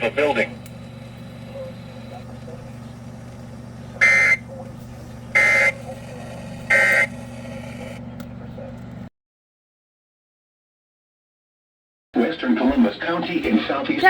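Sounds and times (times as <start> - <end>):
low hum: 0.0 - 9.1
raspy two-tone digital bursts: 4.0 - 4.5, 5.3 - 8.0.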